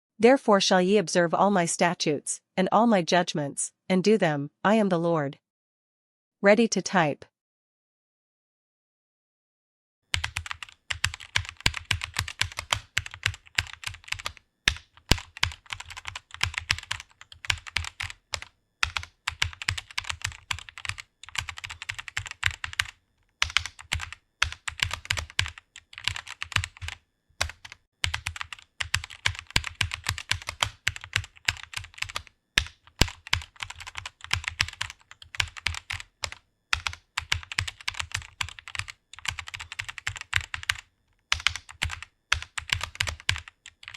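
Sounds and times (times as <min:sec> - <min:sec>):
fast keyboard typing: 0:10.1 - 0:43.9.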